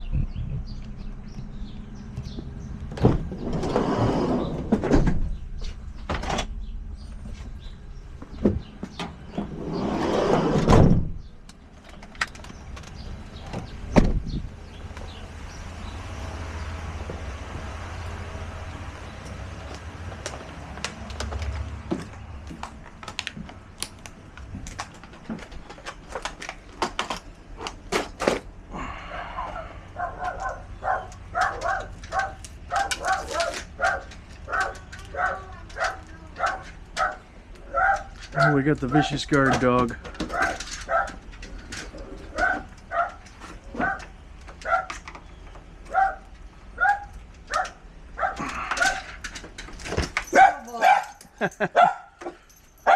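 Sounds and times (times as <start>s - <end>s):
door rolling along track: 1.8s - 5.4s, 8.6s - 11.1s
sliding door clicking: 9.3s - 11.0s.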